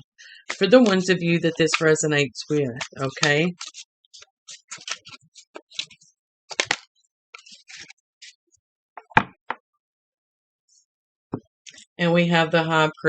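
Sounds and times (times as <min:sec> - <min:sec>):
cards flicking and rustling: 0:00.3 - 0:02.0, 0:02.8 - 0:08.4.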